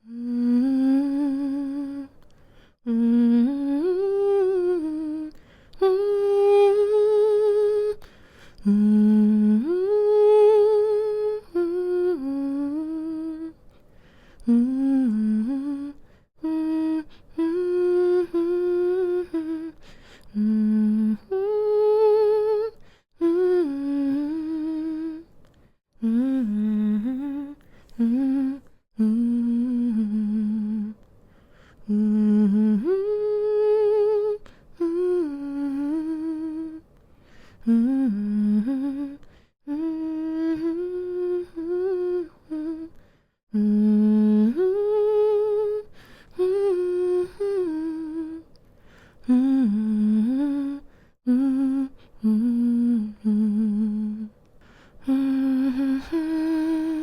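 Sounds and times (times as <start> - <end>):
woman humming a lullaby: 0.0 - 2.2, 14.5 - 25.3, 37.7 - 42.9, 55.0 - 57.0.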